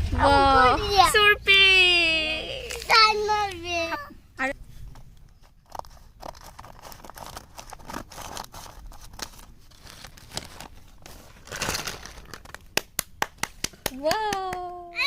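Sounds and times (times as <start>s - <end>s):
packaging crinkling: 4.9s - 12.8s.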